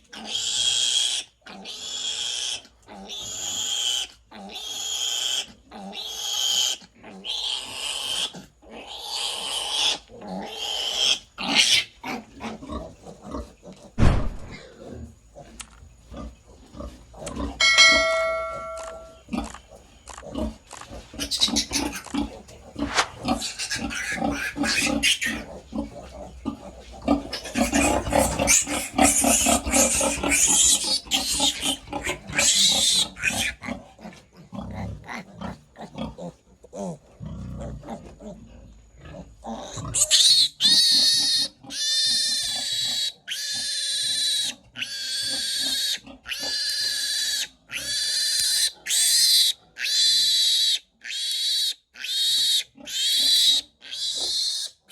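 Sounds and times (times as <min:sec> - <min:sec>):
piglet squealing and screaming: 0:00.2 - 0:12.3, 0:21.2 - 0:22.2, 0:22.8 - 0:25.5, 0:27.3 - 0:33.7, 0:39.6 - 0:54.9
thump: 0:14.0 - 0:14.6
short ringing tone: 0:17.6 - 0:19.2.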